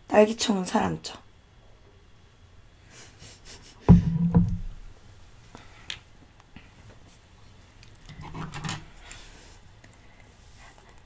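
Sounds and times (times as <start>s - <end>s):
low hum: 3.9s - 5.0s.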